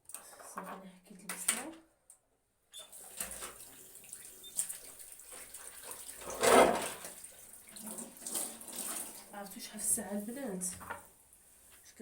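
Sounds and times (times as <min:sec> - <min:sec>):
water running from a tap: 0:02.8 - 0:11.8
water splashing in sink: 0:02.8 - 0:11.9.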